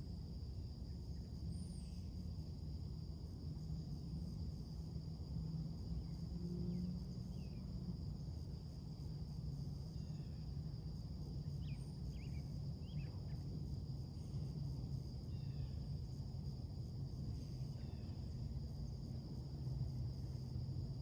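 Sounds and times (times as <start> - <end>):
high insect drone: 0.0 - 21.0.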